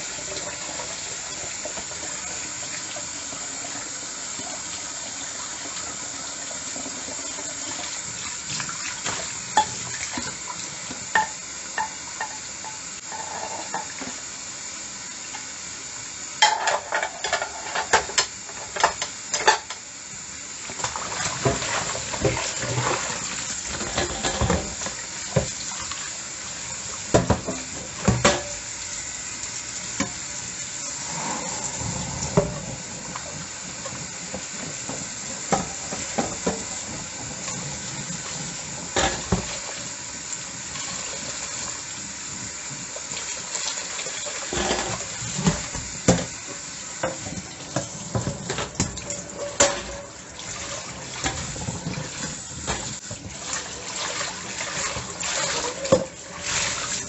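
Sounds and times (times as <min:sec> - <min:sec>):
water running in a sink: 0:00.0 - 0:57.0
plates and cutlery clattering: 0:16.4 - 0:19.8, 0:23.7 - 0:24.9.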